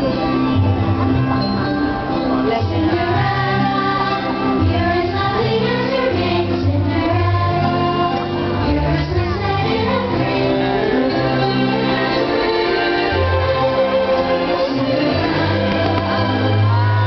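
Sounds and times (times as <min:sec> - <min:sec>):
held orchestral chords: 0:00.0 - 0:17.0
choir singing: 0:02.5 - 0:17.0
steady bass line: 0:12.7 - 0:17.0.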